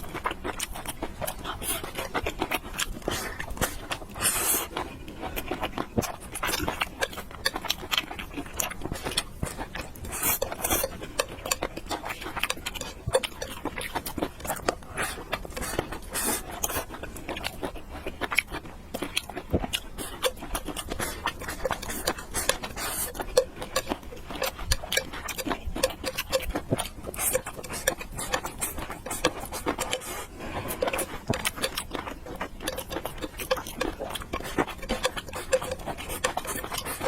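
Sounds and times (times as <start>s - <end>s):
chewing: 0.0s - 37.0s
utensils tapping on dishes: 21.6s - 37.0s.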